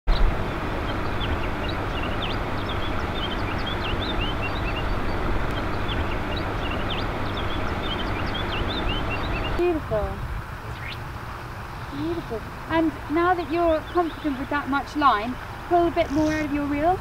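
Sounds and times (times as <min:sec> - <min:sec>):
small birds chirping: 0:00.1 - 0:09.8, 0:10.7 - 0:17.0
steady rushing noise: 0:00.1 - 0:13.7.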